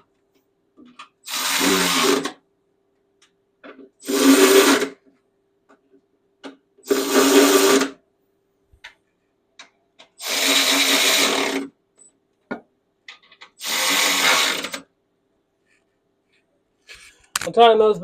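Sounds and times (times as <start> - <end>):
cordless driver spinning: 1.3 - 2.3, 10.2 - 11.7, 13.6 - 14.8.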